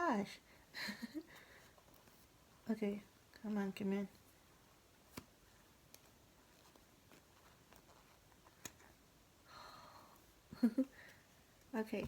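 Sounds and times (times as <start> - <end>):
soft rustle: 0.5 - 12.0.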